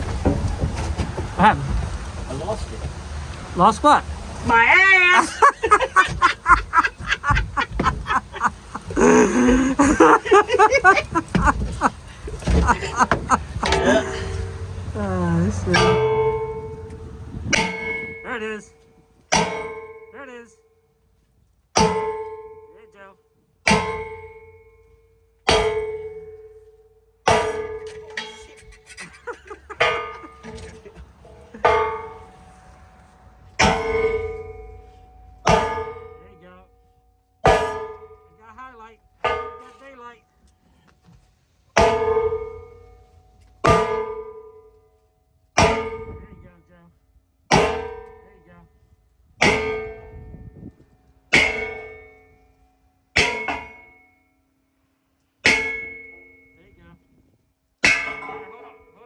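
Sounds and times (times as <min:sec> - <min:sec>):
hammer clanging on steel: 0:05.2 - 0:20.2, 0:21.8 - 0:22.8, 0:23.6 - 0:32.6, 0:33.5 - 0:36.4, 0:37.4 - 0:38.4, 0:39.0 - 0:40.3, 0:41.7 - 0:44.9, 0:45.6 - 0:46.5, 0:47.5 - 0:48.5, 0:49.4 - 0:50.5, 0:51.3 - 0:54.3, 0:55.4 - 0:56.8, 0:57.8 - 0:59.0.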